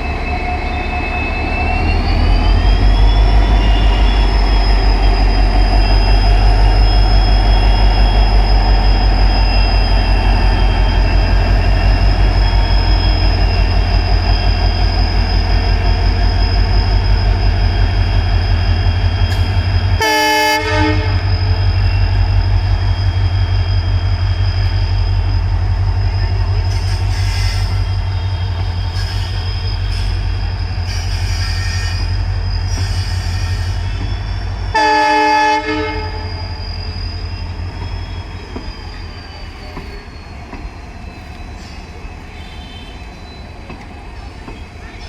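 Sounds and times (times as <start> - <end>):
diesel locomotive engine chugging: 0.0 - 45.0
locomotive horn blasts: 20.0 - 21.2, 34.7 - 36.3, 42.4 - 43.0.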